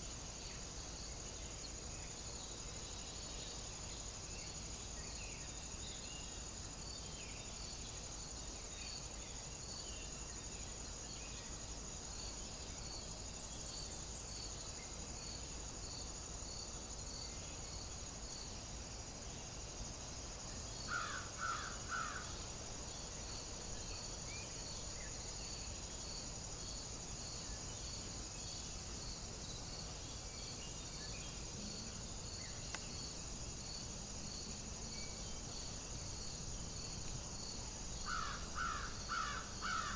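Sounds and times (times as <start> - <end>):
insect chorus buzzing and chirping: 0.0 - 39.9
crow cawing: 20.9 - 22.3, 38.1 - 39.9.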